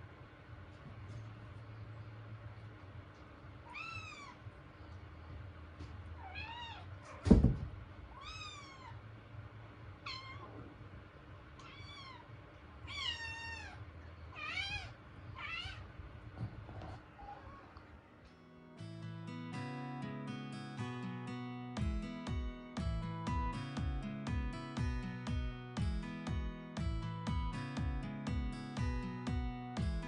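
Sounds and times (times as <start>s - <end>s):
kitten meowing: 3.6s - 4.4s, 8.1s - 9.0s, 10.1s - 10.6s, 11.6s - 13.8s, 14.4s - 15.9s
loud thump: 7.2s - 7.8s.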